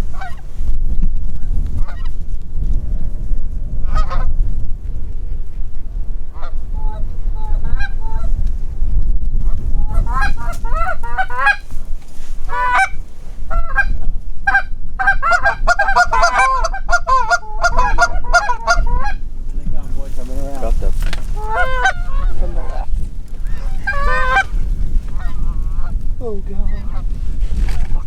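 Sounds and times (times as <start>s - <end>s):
geese honking: 0.0s - 0.5s, 6.3s - 8.3s, 9.8s - 11.8s, 12.4s - 19.3s, 21.3s - 26.0s
wind rumble on microphone: 0.0s - 28.0s.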